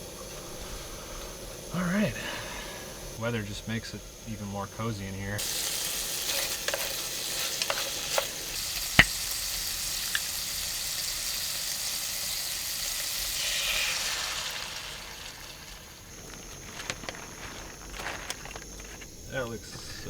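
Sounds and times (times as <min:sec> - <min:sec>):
food sizzling in a pan: 0:04.4 - 0:16.7
utensil clicking against pan: 0:06.2 - 0:09.2.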